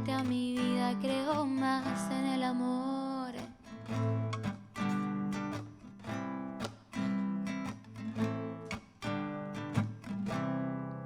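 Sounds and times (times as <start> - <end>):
person singing: 0.0 - 3.5
acoustic guitar strumming: 0.0 - 11.0.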